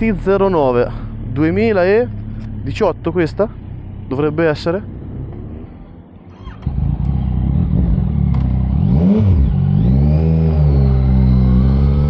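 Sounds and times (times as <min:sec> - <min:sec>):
motorcycle engine accelerating: 0:00.0 - 0:12.0
motorcycle throttle blip: 0:06.4 - 0:08.8.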